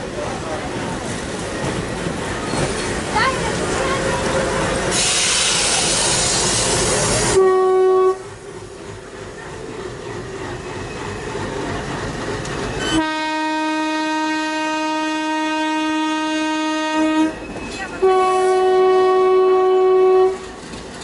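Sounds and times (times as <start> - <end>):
moving train noise: 0.0 - 21.0
diesel locomotive horn blasts: 7.3 - 8.3, 12.8 - 20.6.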